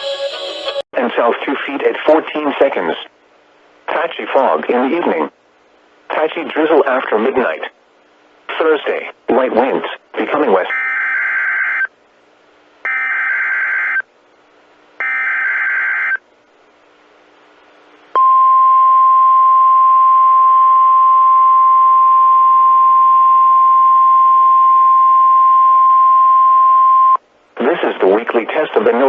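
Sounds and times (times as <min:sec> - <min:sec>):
steady warning alarm tone: 0:12.9 - 0:14.0, 0:15.0 - 0:16.2.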